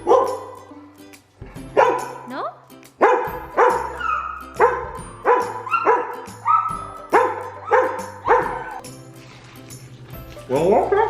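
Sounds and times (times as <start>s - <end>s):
dog barking: 0.0s - 0.7s, 1.7s - 2.3s, 3.0s - 8.8s, 10.8s - 11.0s.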